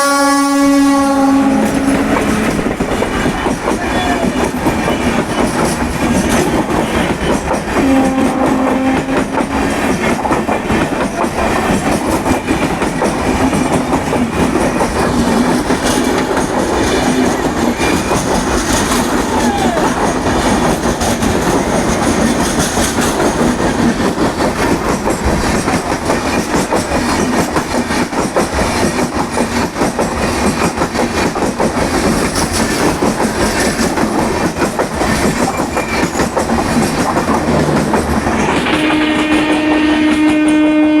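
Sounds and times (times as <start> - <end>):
train horn: 0.0 - 5.2, 7.8 - 9.8, 38.4 - 41.0
train rumbling past: 0.0 - 41.0
wheels clattering over rail joints: 1.6 - 8.2, 9.2 - 40.3.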